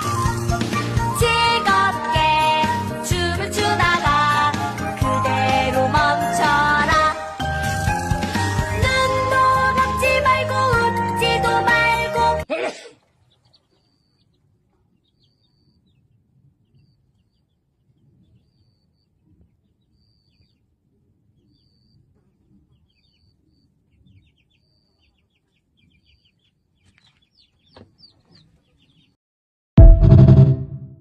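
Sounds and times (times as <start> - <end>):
chicks peeping: 7.7 - 10.8, 13.2 - 29.2.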